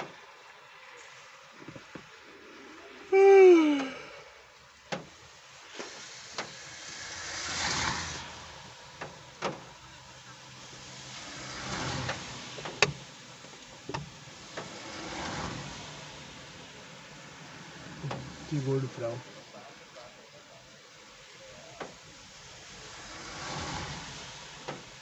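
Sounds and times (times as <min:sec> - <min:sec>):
cars passing: 0:00.0 - 0:25.0
sharp knocks and clicks: 0:12.1 - 0:13.0, 0:13.9 - 0:14.7.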